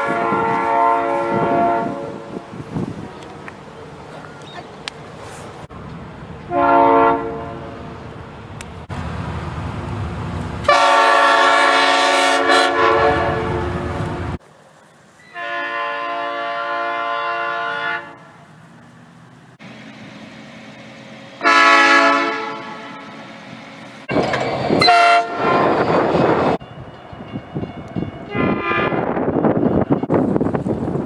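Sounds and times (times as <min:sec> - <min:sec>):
train horn blasts: 0:00.0 - 0:03.6, 0:06.5 - 0:08.0, 0:10.6 - 0:14.4, 0:15.3 - 0:18.6, 0:21.4 - 0:23.3, 0:24.1 - 0:26.4, 0:27.3 - 0:30.1
passing train noise: 0:00.0 - 0:31.0.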